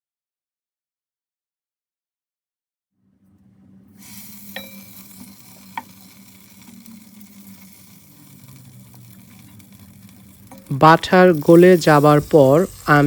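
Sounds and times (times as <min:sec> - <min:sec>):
butter sizzling in a pot: 0:04.0 - 0:13.0.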